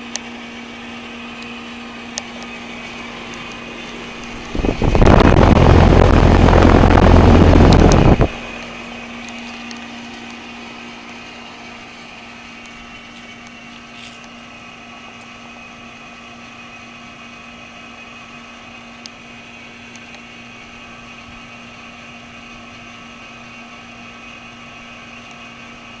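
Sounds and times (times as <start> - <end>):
hvac unit humming: 0.0 - 26.0
loud rush of air: 4.1 - 8.9.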